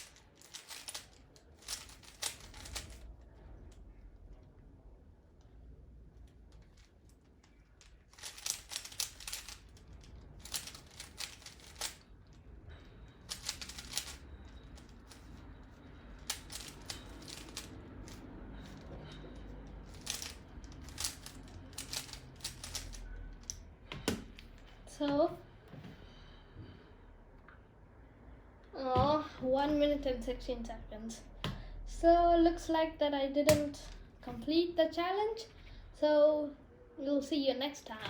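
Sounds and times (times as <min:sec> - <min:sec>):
puzzle cube clicking turns: 0:00.0 - 0:03.1, 0:06.6 - 0:12.4, 0:13.2 - 0:15.3, 0:16.1 - 0:18.9, 0:19.8 - 0:24.5.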